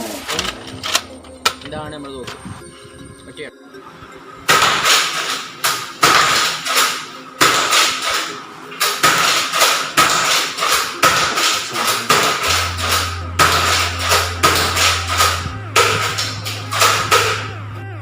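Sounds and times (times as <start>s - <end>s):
toy dart blaster clacking shots: 4.5s - 17.5s.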